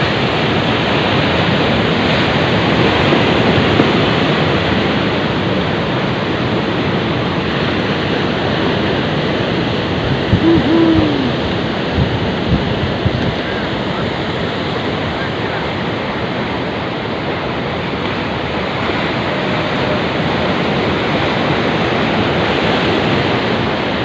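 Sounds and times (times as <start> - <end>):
sea surf against a breakwater: 0.0 - 24.0
brief pitched sound: 10.4 - 11.4.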